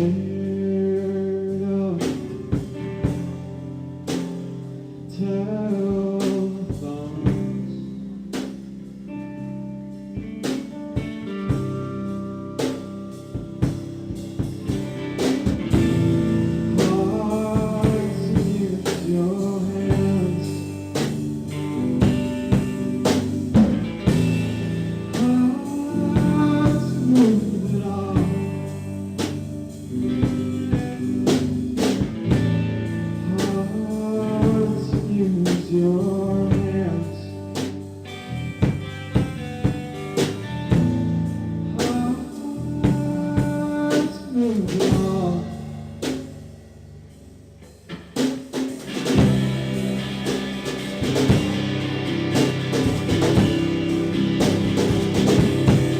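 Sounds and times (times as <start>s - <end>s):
person singing: 0.0s - 2.8s, 5.0s - 8.2s, 14.8s - 24.2s, 25.0s - 31.0s, 33.2s - 37.7s, 41.6s - 46.2s
band playing drums and guitar: 0.0s - 55.9s.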